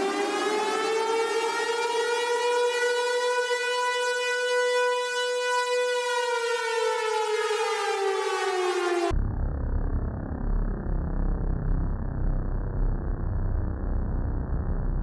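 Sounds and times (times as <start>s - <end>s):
civil defense siren wailing: 0.0s - 9.2s.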